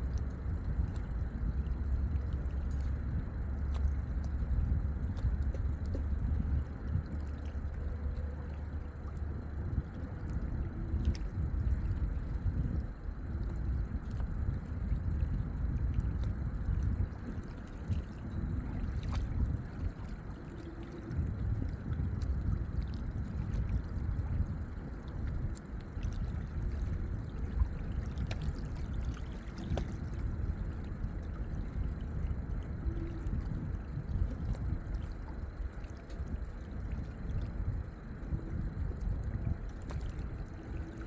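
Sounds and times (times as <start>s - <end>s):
lake water lapping at shore: 17.2s - 41.0s.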